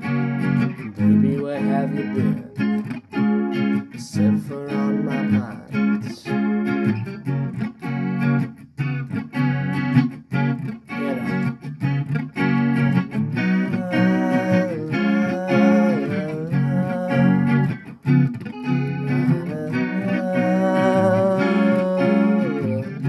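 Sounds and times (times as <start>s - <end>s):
electric guitar rhythmic chords: 0.0s - 23.0s
guitar melody bending pitch: 0.0s - 23.0s.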